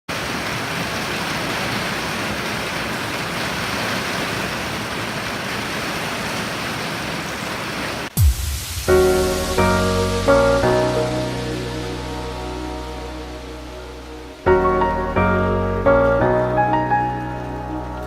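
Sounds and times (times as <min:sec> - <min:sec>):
heavy rain: 0:00.1 - 0:18.0
sharp low thump: 0:08.2 - 0:11.7.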